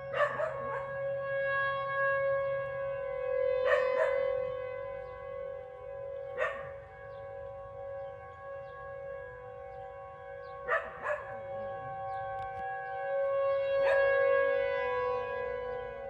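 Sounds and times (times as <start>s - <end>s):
warning siren steady tone: 0.0s - 16.0s
dog barking: 0.1s - 1.0s, 3.6s - 4.3s, 6.3s - 6.8s, 10.7s - 11.4s, 13.8s - 14.1s.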